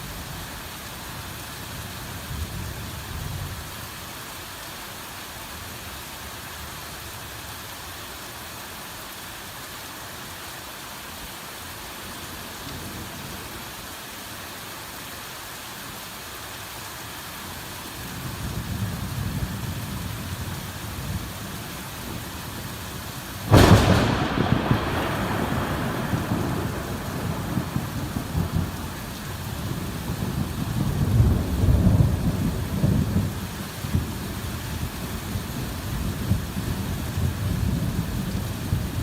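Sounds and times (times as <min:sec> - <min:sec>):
heavy rain falling: 0:00.0 - 0:39.0
sharp thunderclap: 0:23.5 - 0:33.3
thunder rumbling: 0:23.5 - 0:34.5.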